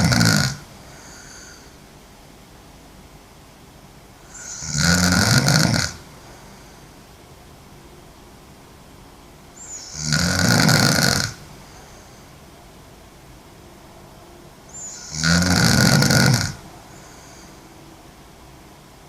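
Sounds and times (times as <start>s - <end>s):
woman snoring: 0.0s - 1.8s, 4.2s - 6.1s, 9.6s - 11.9s, 14.8s - 17.6s.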